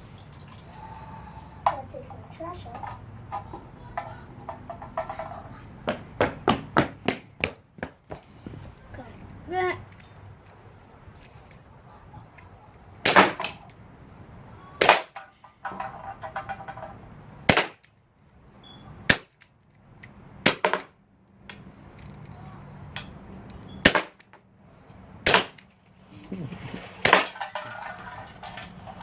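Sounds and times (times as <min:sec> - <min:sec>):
bb gun firing sharp pops: 0:13.0 - 0:13.7, 0:14.8 - 0:15.3, 0:17.5 - 0:18.0, 0:19.1 - 0:21.6, 0:23.8 - 0:24.4, 0:25.2 - 0:25.8.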